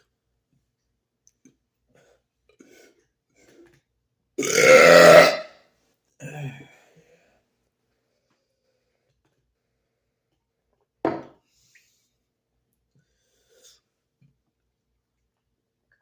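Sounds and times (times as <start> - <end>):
man belching: 4.4 - 5.5.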